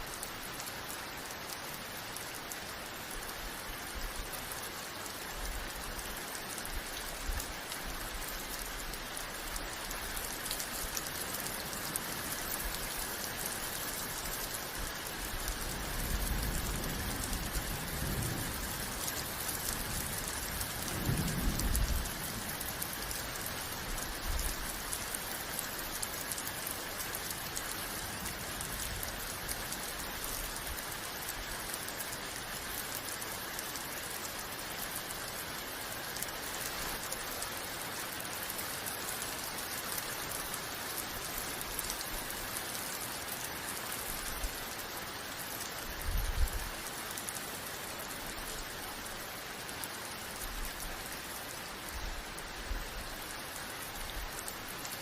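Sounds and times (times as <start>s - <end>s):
steady rain falling: 0.0s - 55.0s.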